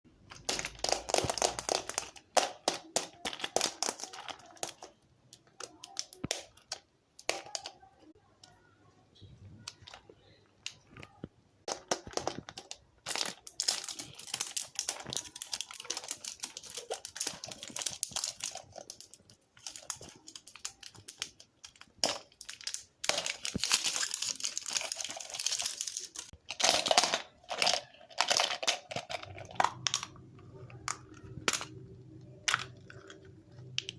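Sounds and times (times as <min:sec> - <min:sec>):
plastic crinkling: 0:00.2 - 0:06.7, 0:09.6 - 0:33.9.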